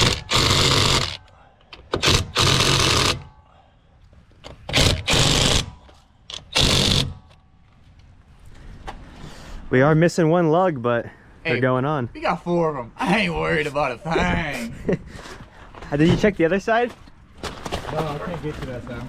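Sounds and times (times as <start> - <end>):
impact wrench bursts: 0.0 - 1.2, 1.8 - 3.4, 4.5 - 7.4.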